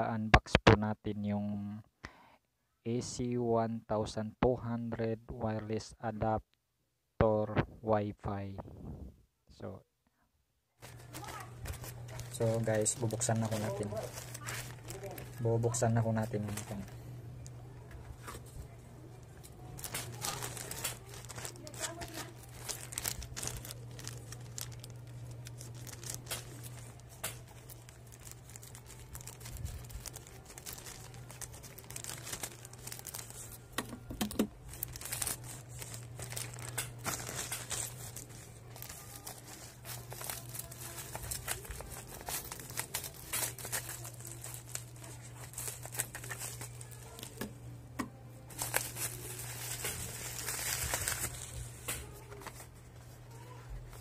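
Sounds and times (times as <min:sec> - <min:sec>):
packaging crinkling and tearing: 0:10.8 - 0:47.6, 0:48.5 - 0:54.0
steady low hum: 0:10.8 - 0:54.0.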